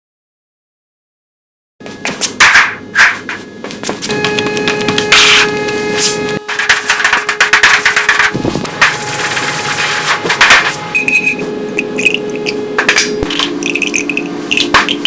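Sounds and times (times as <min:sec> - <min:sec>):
steady low hum: 0:01.8 - 0:15.0
hand tools knocking and scraping: 0:06.5 - 0:15.0.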